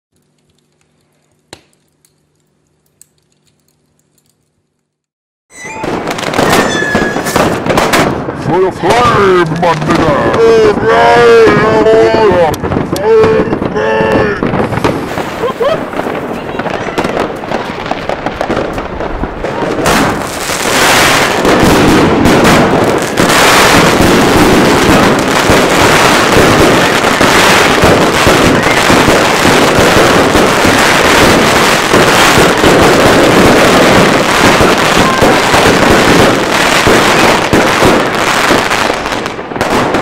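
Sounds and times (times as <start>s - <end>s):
firework launches and bursts: 5.7s - 8.4s, 14.4s - 40.0s.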